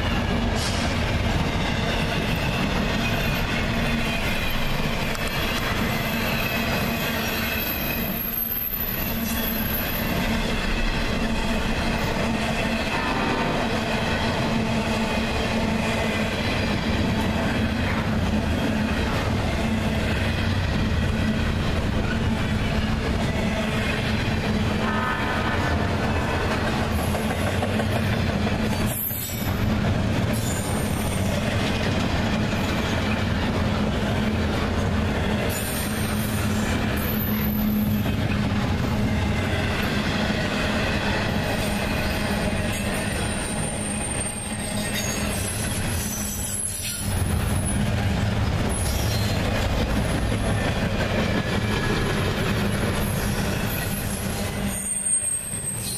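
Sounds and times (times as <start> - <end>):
freight train rumbling past: 0.0 - 55.9
high-pitched wheel squeals: 53.1 - 55.9.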